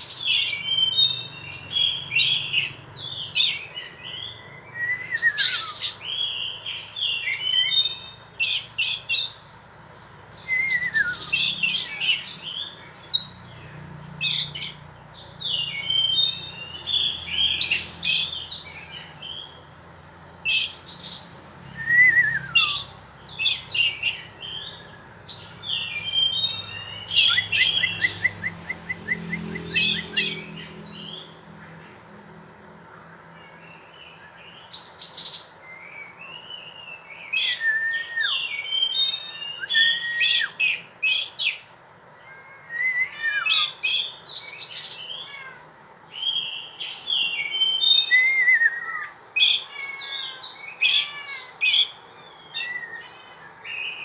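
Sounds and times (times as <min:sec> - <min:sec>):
songbirds chirping and warbling: 0:00.0 - 0:54.0
bird whistles falling: 0:04.7 - 0:05.9, 0:10.5 - 0:11.4, 0:37.3 - 0:40.6.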